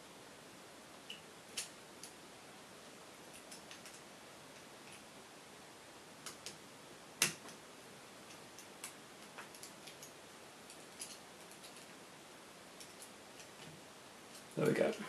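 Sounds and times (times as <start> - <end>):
small metallic clicks and taps: 3.3 - 5.0, 8.3 - 11.9.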